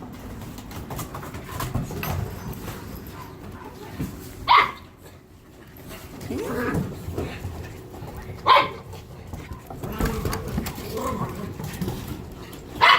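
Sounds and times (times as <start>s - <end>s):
dogs scuffling: 0.0s - 12.9s
dog yapping: 4.4s - 4.9s.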